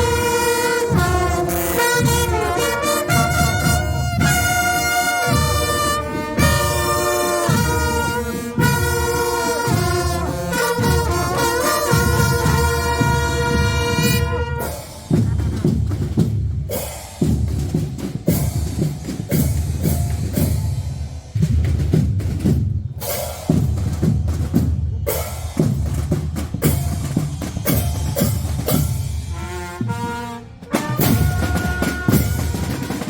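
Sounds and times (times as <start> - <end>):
brass chord: 0.0 - 15.0, 29.3 - 33.0
bass drum: 0.0 - 20.7
snare drums: 0.0 - 33.0.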